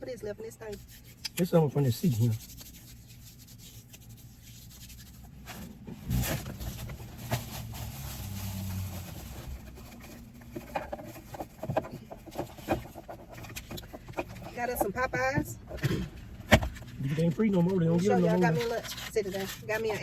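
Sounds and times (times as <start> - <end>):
things handled clicking and knocking: 9.6 - 20.0.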